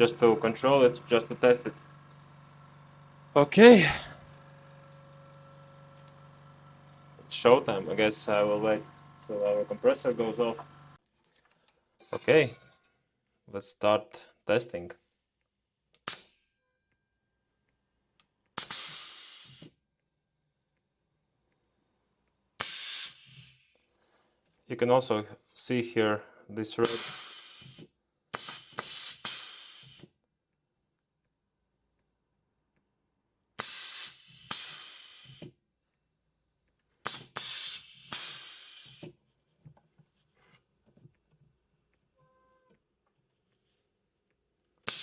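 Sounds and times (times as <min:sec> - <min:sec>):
compressed air hissing from valve: 0:03.6 - 0:04.3, 0:18.6 - 0:19.8, 0:22.6 - 0:23.9, 0:26.8 - 0:30.1, 0:33.6 - 0:35.6, 0:37.0 - 0:39.2.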